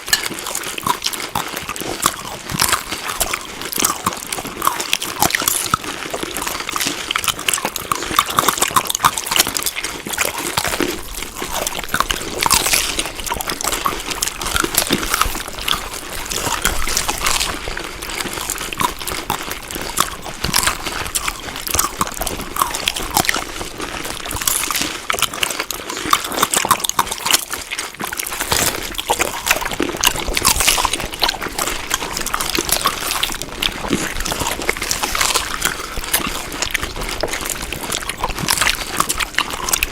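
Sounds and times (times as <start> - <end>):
wet chewing of food: 0.0 - 39.9.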